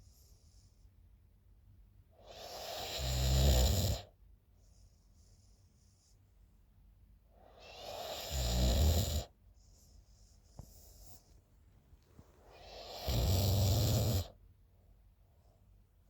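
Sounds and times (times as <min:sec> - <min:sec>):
soft hiss of breath: 0:00.0 - 0:00.9, 0:09.5 - 0:13.3
woman snoring: 0:02.3 - 0:04.1, 0:07.6 - 0:09.3, 0:12.6 - 0:14.4.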